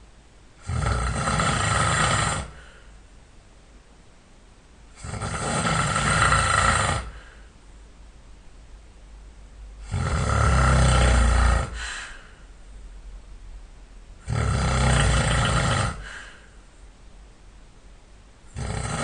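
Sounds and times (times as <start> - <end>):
man snoring loudly: 0.6 - 2.6, 5.0 - 7.2, 9.8 - 11.9, 14.2 - 16.2, 18.5 - 19.0
breath out: 2.5 - 3.0, 7.0 - 7.6, 11.7 - 12.5, 16.0 - 16.6.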